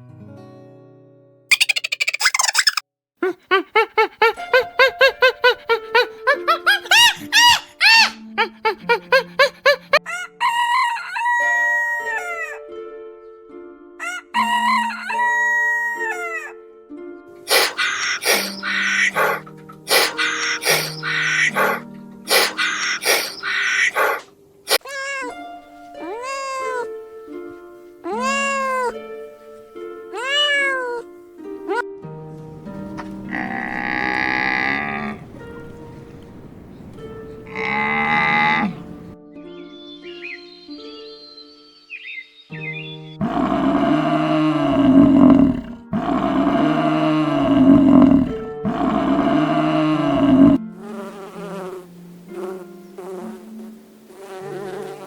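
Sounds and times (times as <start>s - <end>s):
rough animal calls: 1.5s - 11.2s, 17.5s - 25.4s, 28.0s - 29.0s, 32.9s - 35.6s, 37.4s - 39.0s, 42.0s - 50.6s
background music: 4.2s - 36.3s, 37.2s - 55.0s
cat meowing: 20.0s - 21.8s, 22.4s - 27.0s, 28.0s - 29.0s, 30.1s - 31.1s.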